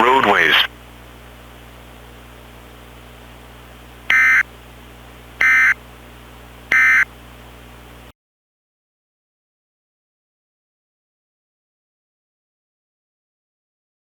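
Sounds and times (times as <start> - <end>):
steady hiss and hum: 0.0 - 8.1
data tone bursts: 4.1 - 4.4, 5.4 - 5.8, 6.7 - 7.1.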